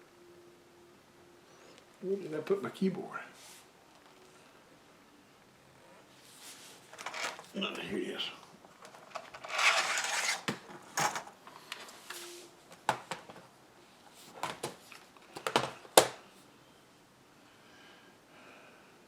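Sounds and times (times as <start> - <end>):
objects scraping on a desk: 8.8 - 12.5.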